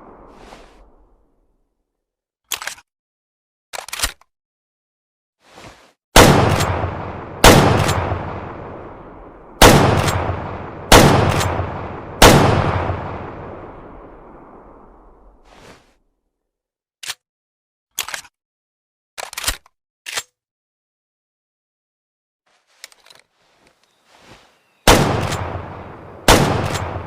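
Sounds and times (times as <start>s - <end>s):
rifle action clicks: 3.8s - 4.3s
loud rifle shots echoing: 6.2s - 14.6s, 24.9s - 27.0s.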